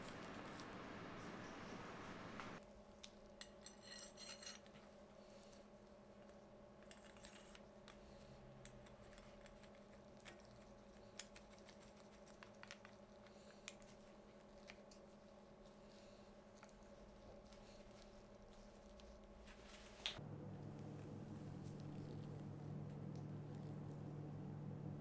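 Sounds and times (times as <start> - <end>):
faint steady hum: 0.0 - 25.0
clicks and scrapes of small objects: 6.2 - 15.1.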